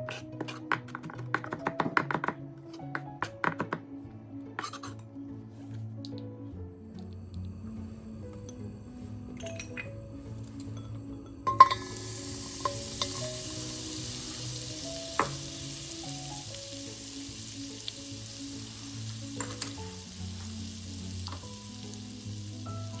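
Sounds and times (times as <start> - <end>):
soft background music: 0.0 - 23.0
vegetables sizzling in a pan: 11.5 - 23.0.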